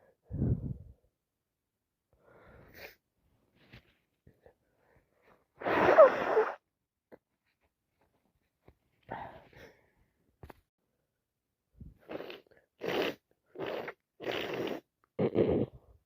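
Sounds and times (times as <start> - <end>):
faint breath in: 2.2 - 3.0
person sneezing: 5.6 - 6.6.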